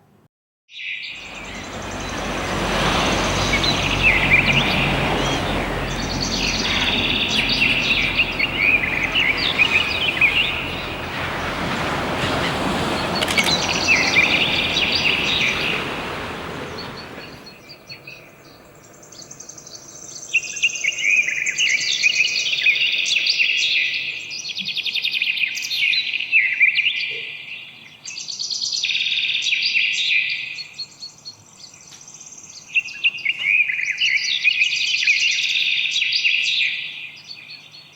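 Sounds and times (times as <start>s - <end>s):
songbird warbling: 0.7s - 37.9s
steady rushing noise: 1.2s - 17.6s.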